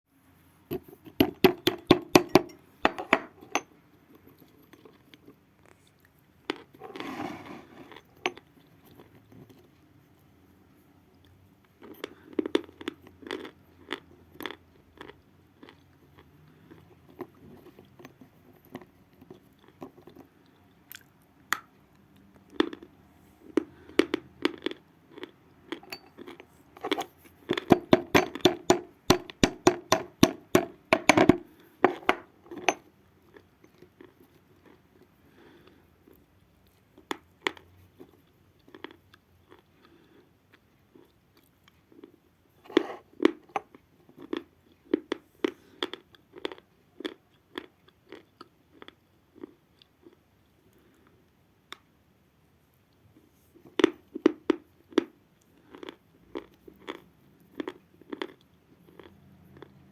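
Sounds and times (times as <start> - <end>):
chalk being chewed: 55.4 - 59.8.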